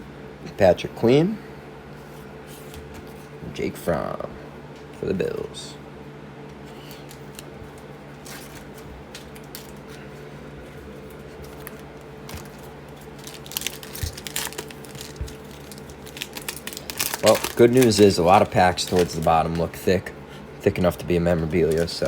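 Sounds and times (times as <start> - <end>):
steady low hum: 0.0 - 22.0
cards rustling and crinkling: 6.6 - 20.0, 20.7 - 22.0.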